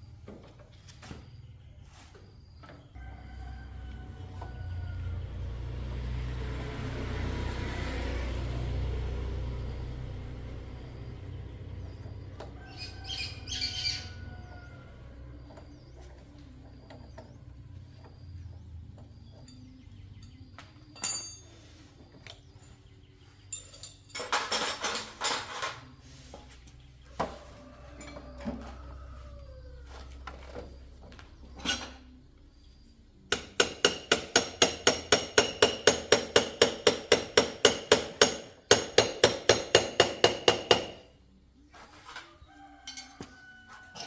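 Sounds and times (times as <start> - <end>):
hammer striking metal: 33.3 - 41.0.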